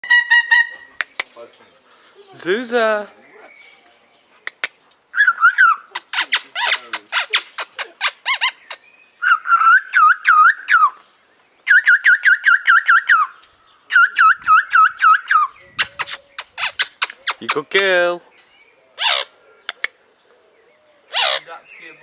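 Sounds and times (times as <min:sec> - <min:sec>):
parrot squeaky whistled notes: 0:05.2 - 0:05.8.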